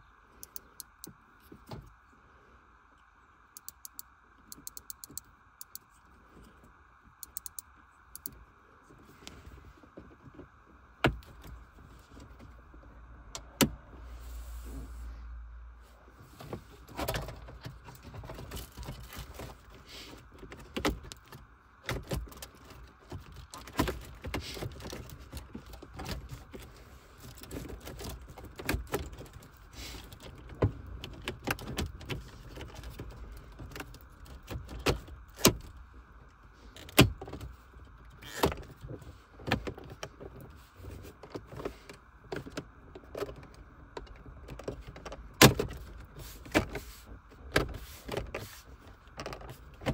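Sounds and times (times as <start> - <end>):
faint steady hum: 0.0 - 49.9
clicks of small hard parts: 3.6 - 5.8, 7.2 - 7.6.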